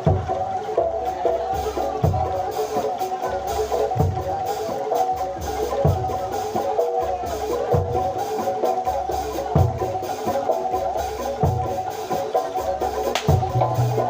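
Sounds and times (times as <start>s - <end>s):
metallophones and gongs: 8.9s - 14.0s
deep bass drum strikes: 13.2s - 14.0s.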